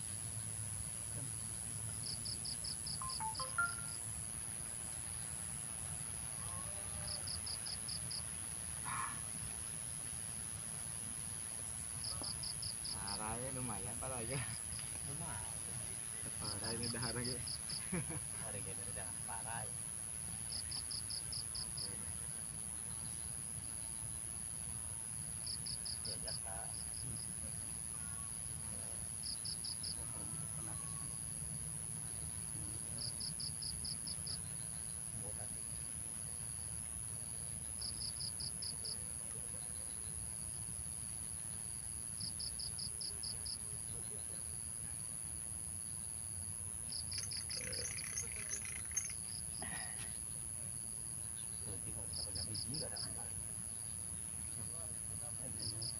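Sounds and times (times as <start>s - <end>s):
cricket chirping: 0.0s - 55.9s
insect trills: 0.0s - 55.9s
high-pitched insect drone: 2.0s - 4.2s, 46.8s - 50.1s.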